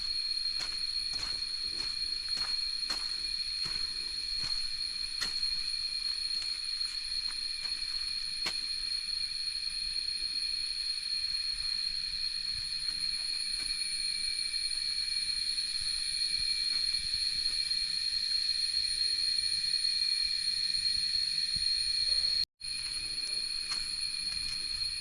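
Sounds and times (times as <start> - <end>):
insects droning: 0.0 - 25.0.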